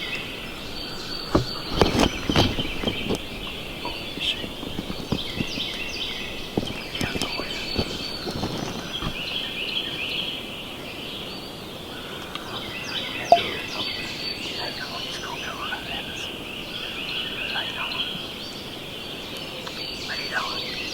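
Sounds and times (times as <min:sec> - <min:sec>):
faint rustling clicks: 0:00.6 - 0:10.1.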